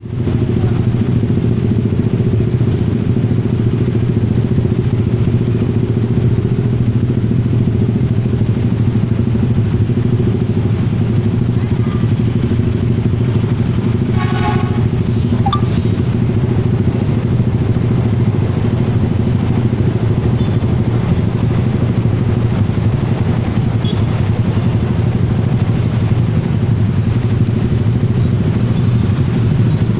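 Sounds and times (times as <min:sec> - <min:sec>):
horn-like tone: 0:14.1 - 0:16.0.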